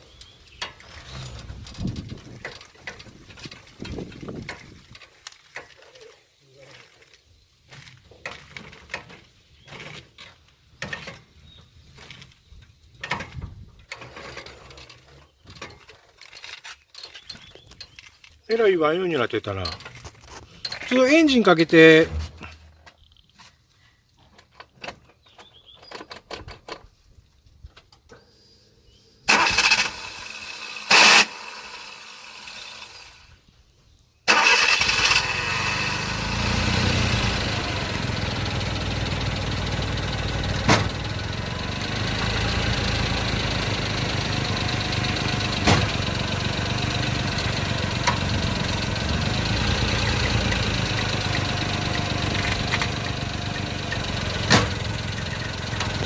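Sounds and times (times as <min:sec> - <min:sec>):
car engine starting and idling: 0:00.1 - 0:04.7, 0:29.3 - 0:33.3, 0:34.3 - 0:56.0.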